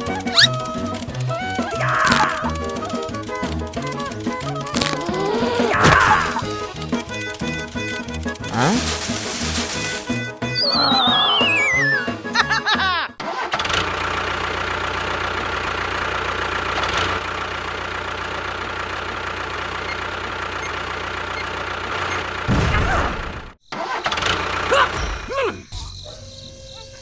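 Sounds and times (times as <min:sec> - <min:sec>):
small motor whirring: 0:00.0 - 0:06.9.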